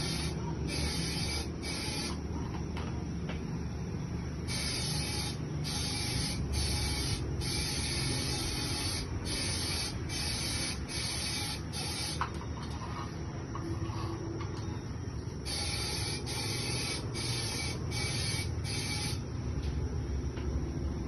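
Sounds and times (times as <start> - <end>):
spray gun hissing bursts: 0.0 - 2.1, 4.5 - 12.2, 15.5 - 19.2
steady low hum: 0.0 - 21.0.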